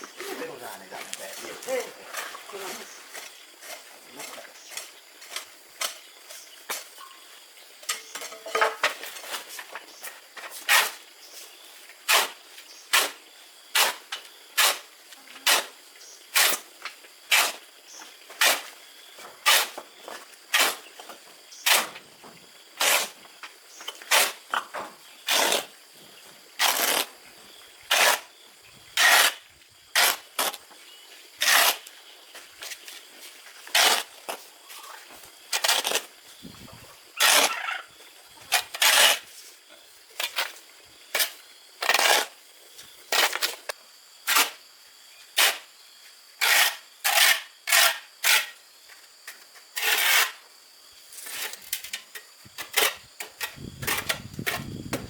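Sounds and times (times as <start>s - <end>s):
hand tool scraping gritty material: 10.4s - 16.7s, 17.3s - 17.7s, 18.3s - 21.0s, 21.6s - 22.0s, 22.8s - 24.5s, 25.1s - 25.8s, 26.6s - 27.2s, 27.9s - 34.8s, 35.4s - 37.6s, 38.4s - 42.4s, 43.0s - 44.6s, 45.3s - 45.7s, 46.4s - 48.6s, 49.3s - 50.5s, 51.1s - 55.0s.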